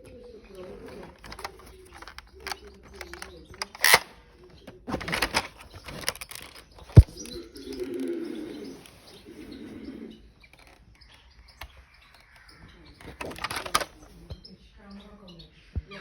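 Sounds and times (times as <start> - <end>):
pigeon cooing: 0.0 - 14.5.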